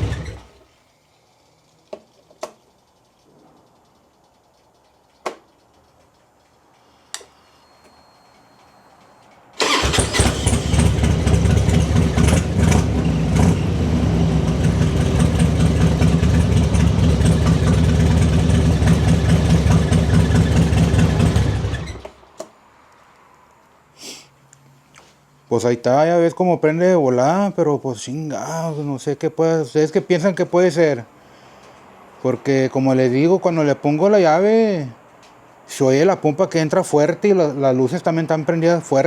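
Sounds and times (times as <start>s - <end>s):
clicks: 1.7s - 9.6s
motorcycle engine running: 9.6s - 22.0s.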